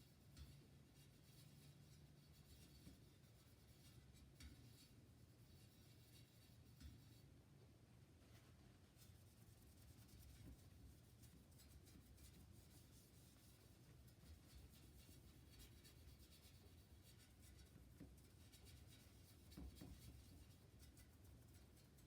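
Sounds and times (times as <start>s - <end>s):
faint scratchy rubbing: 0.0s - 7.2s, 8.2s - 17.7s.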